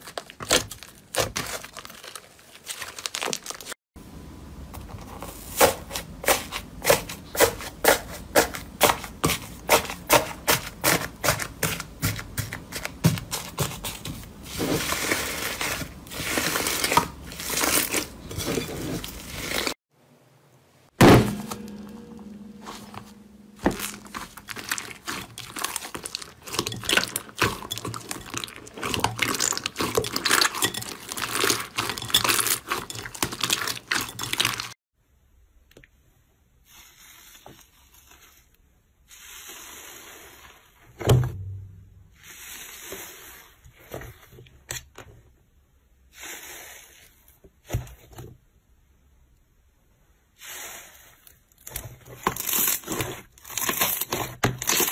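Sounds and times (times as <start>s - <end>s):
slime squishing and scraping: 0.0s - 3.8s, 5.0s - 19.8s, 21.2s - 34.8s, 50.3s - 54.9s
thump: 21.0s - 24.0s, 41.0s - 42.1s
slime crackling and popping: 23.6s - 34.8s.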